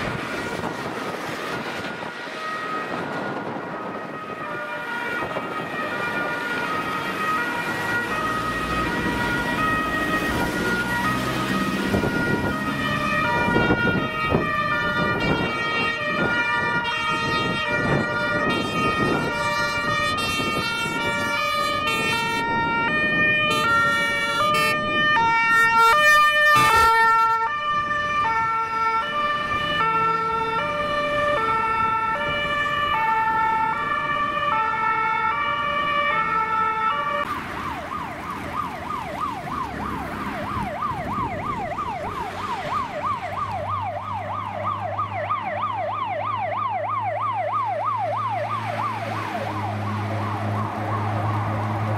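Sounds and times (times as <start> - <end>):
fire truck horns: 0.0 - 37.4, 47.9 - 51.9
fire engine sirens: 0.0 - 51.9
trucks rumbling past: 0.0 - 51.9.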